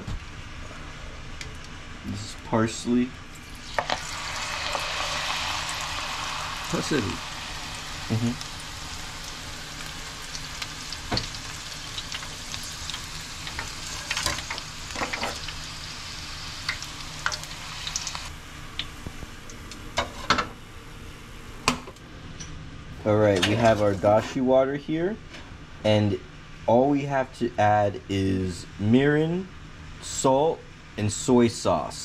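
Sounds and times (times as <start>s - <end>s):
food deep-frying in oil: 3.4s - 19.7s.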